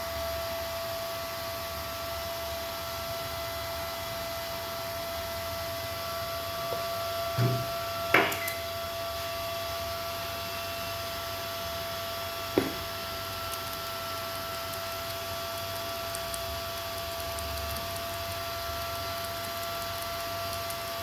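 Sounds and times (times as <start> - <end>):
electrical hum with high tone: 0.0 - 21.0
sharp knocks: 6.8 - 8.6, 12.6 - 12.9
dull thump: 7.4 - 8.4, 12.6 - 12.9.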